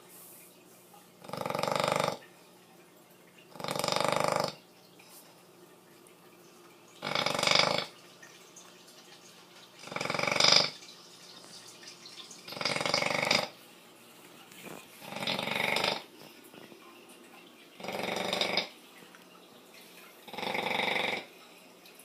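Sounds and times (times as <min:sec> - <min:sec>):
dog snoring: 0:01.2 - 0:02.2, 0:03.5 - 0:04.6, 0:07.0 - 0:07.9, 0:09.8 - 0:10.8, 0:12.5 - 0:13.6, 0:14.6 - 0:16.1, 0:17.8 - 0:18.7, 0:20.2 - 0:21.3.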